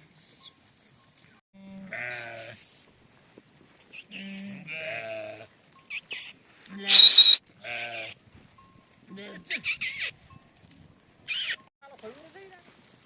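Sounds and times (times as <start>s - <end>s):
sheep bleating: 1.6s - 2.7s, 4.1s - 5.5s, 6.7s - 8.2s.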